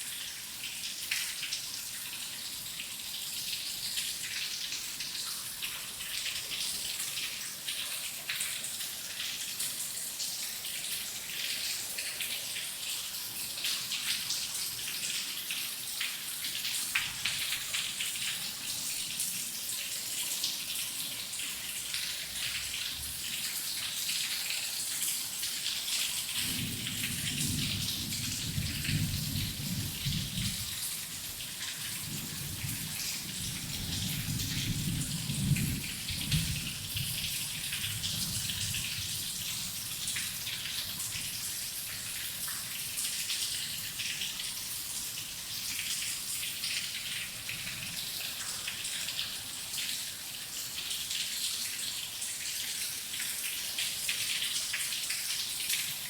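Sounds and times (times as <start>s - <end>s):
heavy rain: 21.3s - 49.7s
distant thunder rumbling: 26.4s - 30.9s.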